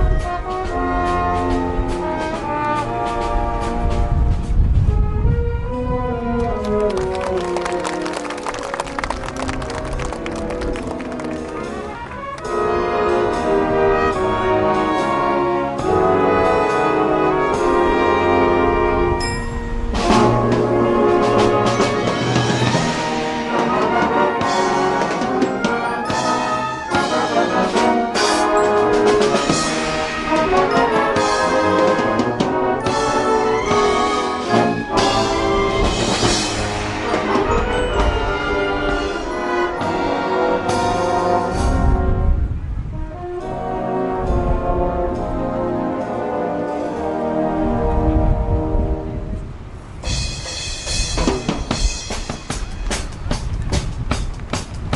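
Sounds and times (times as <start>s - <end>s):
drums: 0.0s - 43.6s, 49.8s - 54.9s
wind band playing: 0.0s - 54.9s
cymbal crash: 50.0s - 53.2s.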